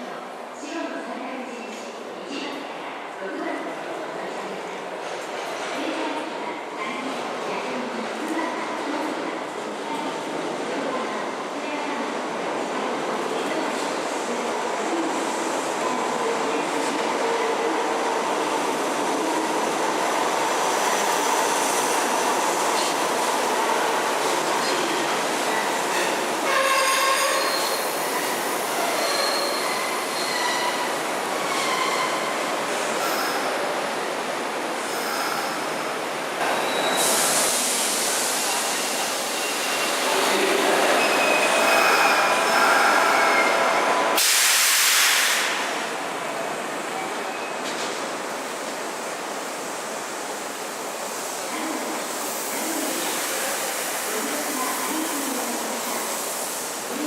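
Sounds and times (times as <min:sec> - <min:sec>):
train wheels squealing: 0:26.6 - 0:28.2, 0:28.8 - 0:30.9, 0:36.6 - 0:37.2, 0:38.4 - 0:40.2, 0:40.8 - 0:43.6
loud hiss: 0:41.6 - 0:45.7.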